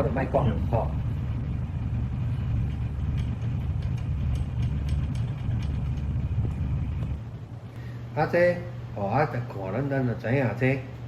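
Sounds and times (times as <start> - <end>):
engine idling: 0.0 - 8.8.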